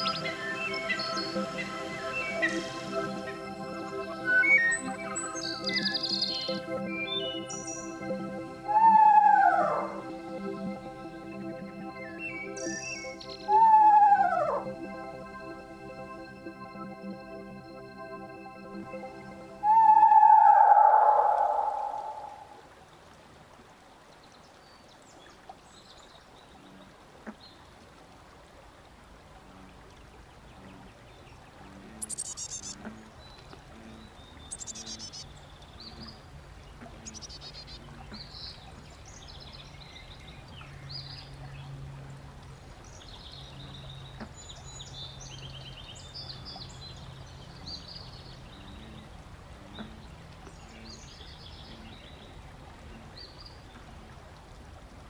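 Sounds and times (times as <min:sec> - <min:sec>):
birds calling and chirping: 0:00.0 - 0:11.1, 0:18.8 - 0:22.6, 0:31.9 - 0:41.8
low repeated tones: 0:00.0 - 0:22.6.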